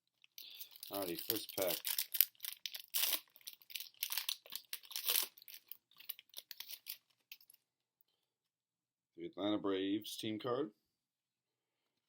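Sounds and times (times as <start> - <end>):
wrapper crinkling and tearing: 0.2 - 7.6.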